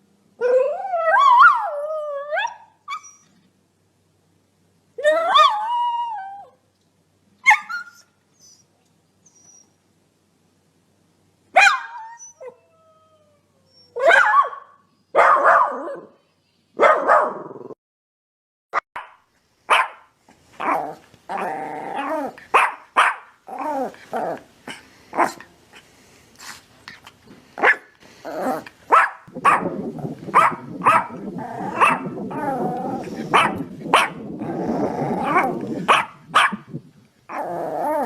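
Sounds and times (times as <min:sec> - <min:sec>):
dog barking and yelping: 0:07.4 - 0:08.1, 0:11.6 - 0:12.6, 0:13.8 - 0:16.2, 0:16.8 - 0:17.6, 0:19.0 - 0:25.5, 0:27.6 - 0:38.0
dog whining: 0:07.5 - 0:09.8, 0:29.4 - 0:35.8.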